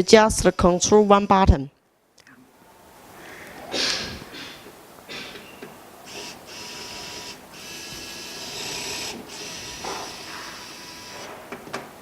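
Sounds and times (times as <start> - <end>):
electric screwdriver whirring: 6.1 - 11.3.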